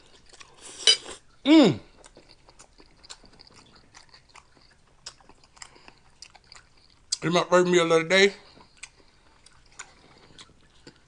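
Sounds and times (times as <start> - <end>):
chewing and mouth sounds: 0.0 - 7.3, 8.4 - 11.0
person humming mm: 1.4 - 1.9.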